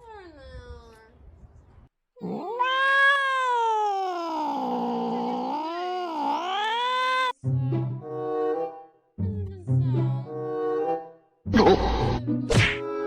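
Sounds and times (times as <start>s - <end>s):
cat yowling: 2.2s - 7.3s.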